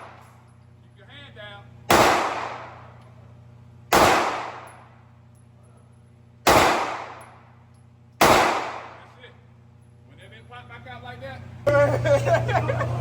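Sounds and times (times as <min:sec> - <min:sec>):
gunshots echoing indoors: 0:01.9 - 0:03.0, 0:03.9 - 0:04.9, 0:06.5 - 0:07.4, 0:08.2 - 0:09.2.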